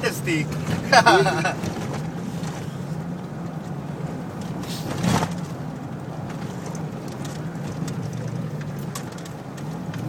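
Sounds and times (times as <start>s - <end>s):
car engine hum: 0.0s - 10.0s
road noise: 0.0s - 10.0s.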